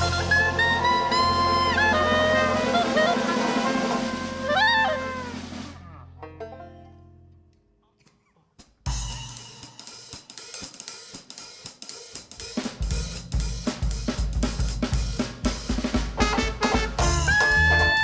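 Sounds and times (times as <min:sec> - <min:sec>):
jazz drum kit beat: 0:00.0 - 0:05.8, 0:08.6 - 0:18.0
deep bass notes: 0:00.0 - 0:06.2, 0:17.0 - 0:18.0.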